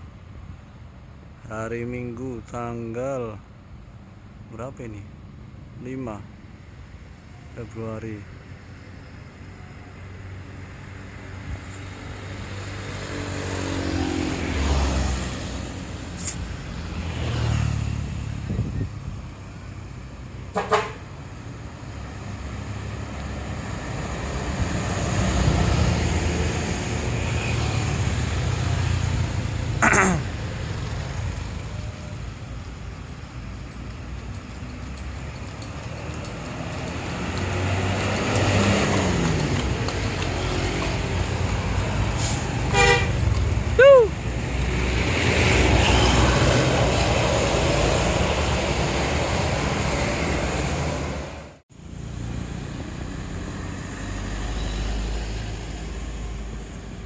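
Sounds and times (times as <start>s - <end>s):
bus diesel engine rumbling: 18.4s - 57.0s.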